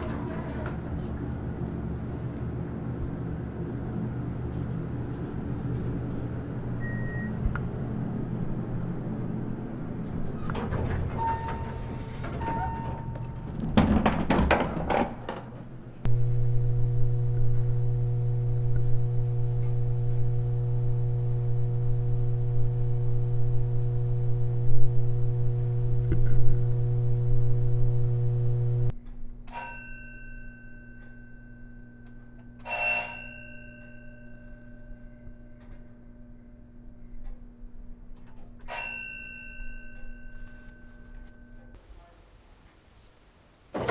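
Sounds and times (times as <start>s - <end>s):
elevator drive humming: 16.1s - 28.9s
short ringing tones: 16.1s - 28.9s.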